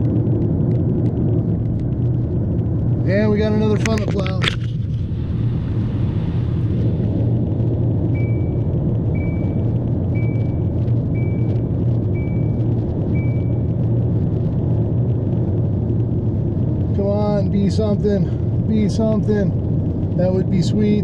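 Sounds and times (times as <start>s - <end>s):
vehicle rumble from inside cabin: 0.0s - 21.0s
short high-pitched beeps: 8.1s - 13.7s.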